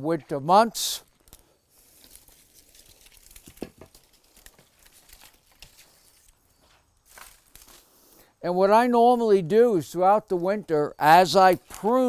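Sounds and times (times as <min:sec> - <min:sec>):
dry branches crackling and rustling: 0:01.0 - 0:08.2, 0:11.3 - 0:12.0
twigs snapping: 0:01.1 - 0:06.4, 0:07.1 - 0:07.9, 0:11.4 - 0:12.0.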